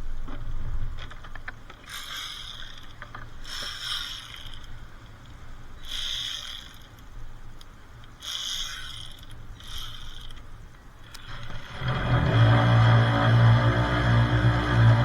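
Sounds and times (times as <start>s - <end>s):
ratchet wrench clicking: 1.9s - 4.8s, 5.8s - 7.0s, 8.1s - 11.3s.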